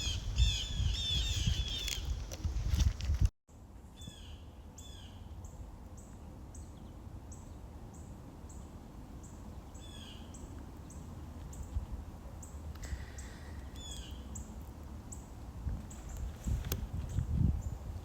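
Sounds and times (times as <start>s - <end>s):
birds chirping: 0.0s - 2.6s, 12.4s - 18.0s.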